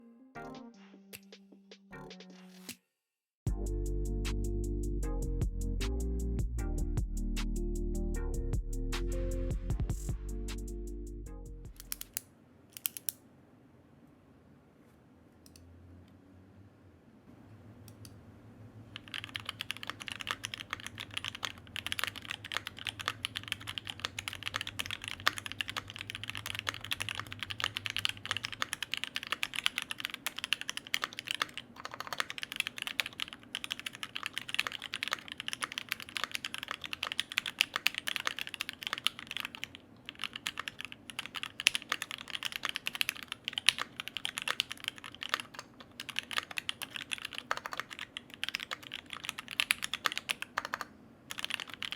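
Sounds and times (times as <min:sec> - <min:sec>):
mechanical keyboard typing: 0:11.8 - 0:12.2, 0:19.0 - 0:51.9.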